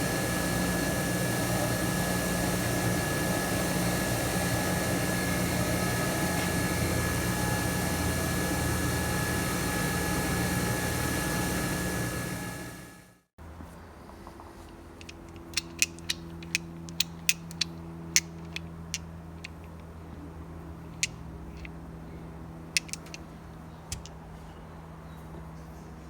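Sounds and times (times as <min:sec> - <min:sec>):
clicks and taps of small tools: 0:14.6 - 0:19.9, 0:22.8 - 0:23.2, 0:23.9 - 0:24.1.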